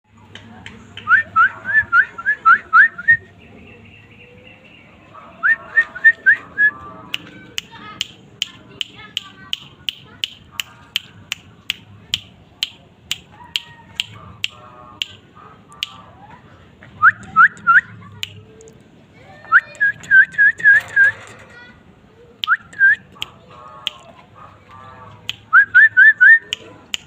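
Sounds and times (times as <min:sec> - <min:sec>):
bird clicking chips: 0:07.1 - 0:16.0, 0:17.0 - 0:18.9, 0:22.4 - 0:24.2, 0:25.2 - 0:27.0.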